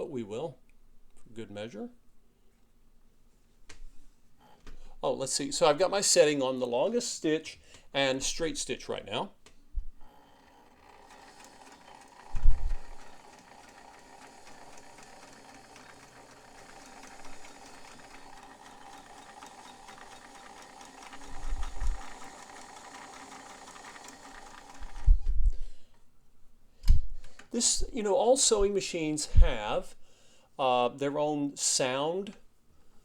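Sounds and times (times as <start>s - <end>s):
sewing machine running: 10.1s - 25.3s.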